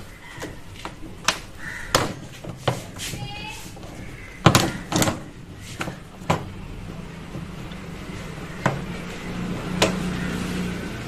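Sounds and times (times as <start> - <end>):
knocks of parts pried apart: 4.4 - 6.5.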